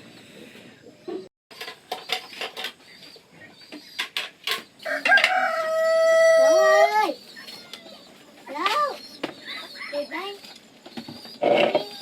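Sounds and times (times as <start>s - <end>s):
rooster crowing: 4.8s - 6.9s.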